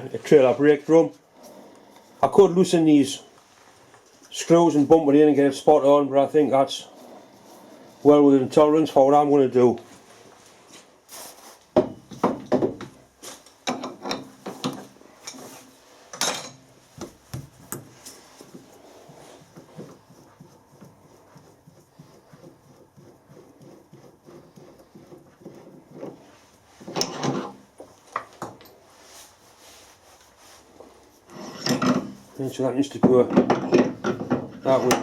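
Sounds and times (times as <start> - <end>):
metal tools clinking and scraping: 13.6 - 16.6, 31.3 - 32.2, 33.4 - 35.0.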